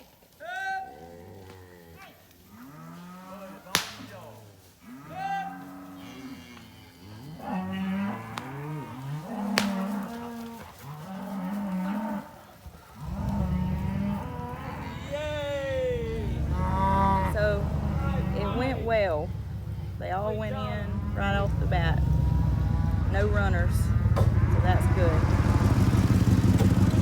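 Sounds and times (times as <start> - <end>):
cows mooing and bawling: 0.6 - 4.0, 4.6 - 27.0
sharp cracks: 3.7 - 4.3, 9.4 - 10.2.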